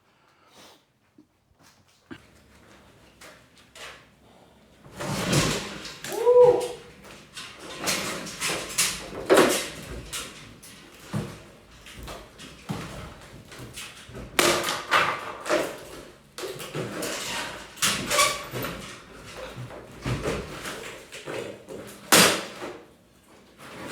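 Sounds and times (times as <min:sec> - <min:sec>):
demolition knocks and scrapes: 0:04.8 - 0:23.9.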